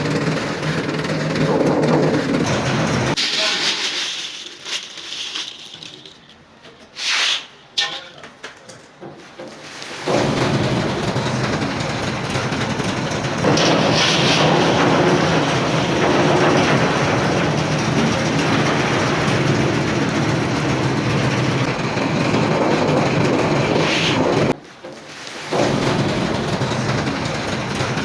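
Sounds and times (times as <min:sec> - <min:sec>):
factory machinery rattling and humming: 0:00.0 - 0:03.6, 0:09.5 - 0:28.0.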